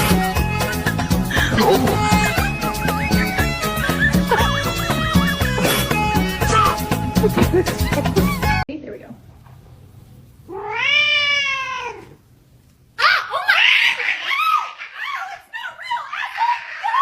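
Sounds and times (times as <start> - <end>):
cat meowing: 10.5 - 12.2.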